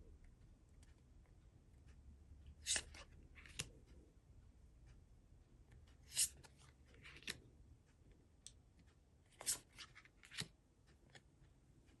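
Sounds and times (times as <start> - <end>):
trading cards swishing: 2.6 - 3.6, 9.4 - 10.5.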